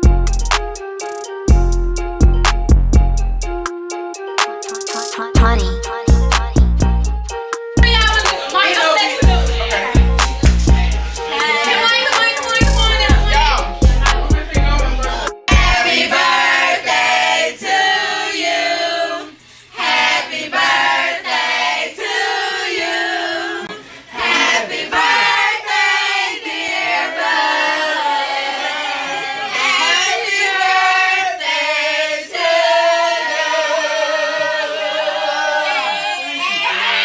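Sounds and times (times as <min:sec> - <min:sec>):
voices singing: 0:07.8 - 0:37.0.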